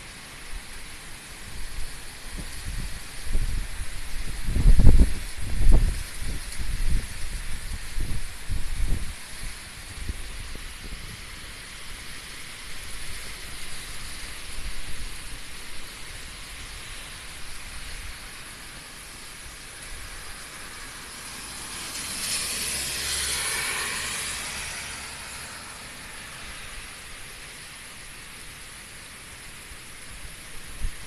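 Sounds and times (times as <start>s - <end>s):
heavy rain: 0.0s - 31.0s
low wind buffeting: 1.5s - 11.4s
strong wind rushing: 2.3s - 9.2s.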